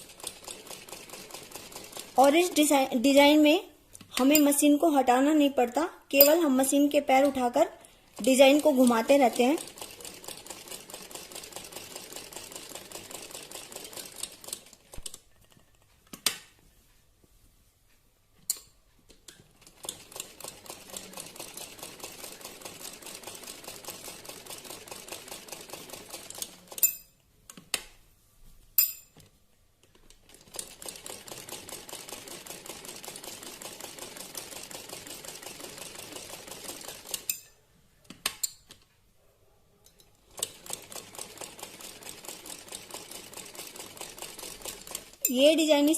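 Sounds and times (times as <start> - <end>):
sewing machine rattling: 0.0 - 2.8, 8.1 - 15.6, 19.4 - 26.8, 29.9 - 37.4, 40.2 - 45.8.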